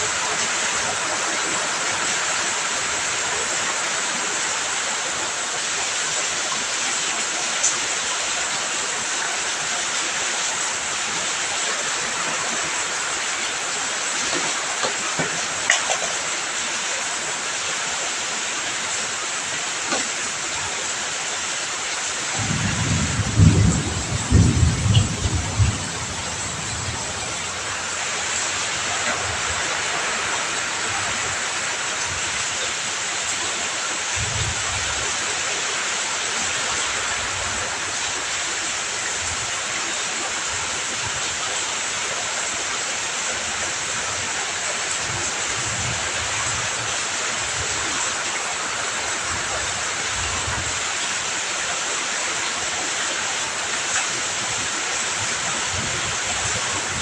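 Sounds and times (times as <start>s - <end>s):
heavy rain pouring: 0.0s - 57.0s
thunder rumbling: 22.4s - 27.8s.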